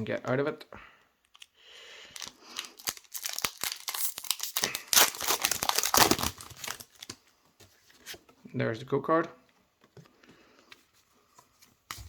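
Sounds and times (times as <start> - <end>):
foil wrapper tearing and crinkling: 2.1 - 7.2.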